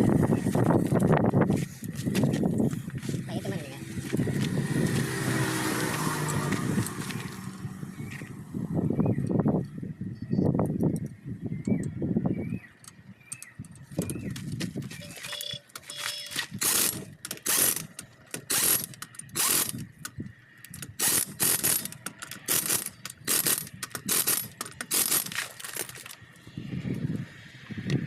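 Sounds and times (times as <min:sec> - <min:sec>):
ratchet clicking: 0:16.5 - 0:26.1.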